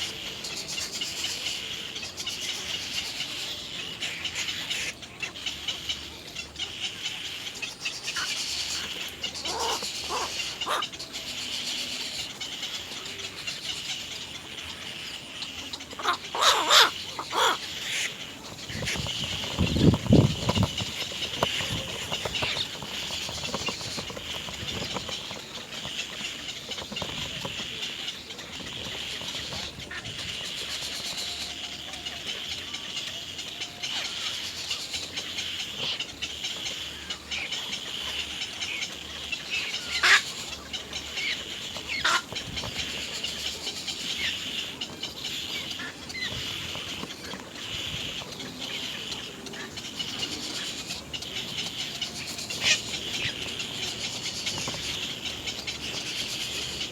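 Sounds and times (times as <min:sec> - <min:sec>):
birds calling: 0:00.0 - 0:56.9.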